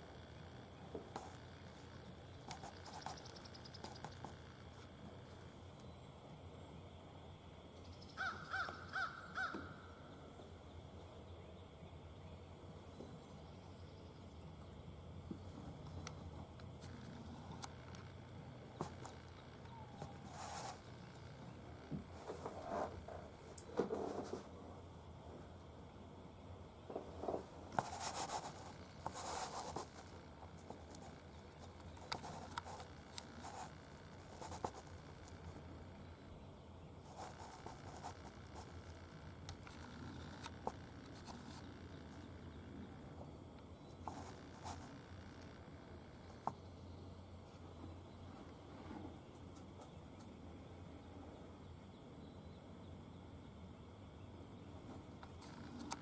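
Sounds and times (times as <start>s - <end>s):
scratching and rustling handling: 0.9s - 5.4s, 15.4s - 24.6s, 26.9s - 35.7s, 37.0s - 42.3s, 43.8s - 45.6s.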